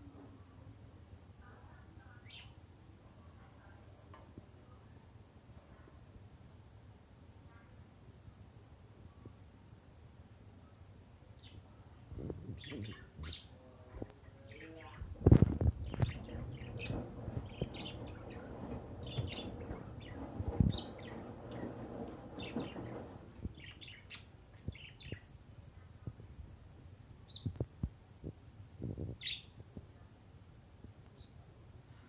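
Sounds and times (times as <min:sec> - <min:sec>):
small birds chirping: 0:12.4 - 0:25.4, 0:27.3 - 0:27.6, 0:29.2 - 0:29.6
scattered knocks: 0:15.2 - 0:23.8
washing machine churning: 0:15.2 - 0:23.8.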